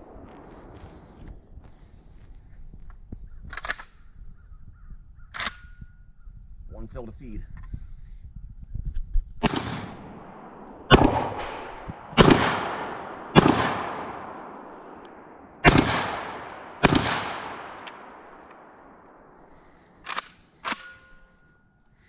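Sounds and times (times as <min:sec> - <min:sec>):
shotgun shots echoing: 0:09.4 - 0:21.1.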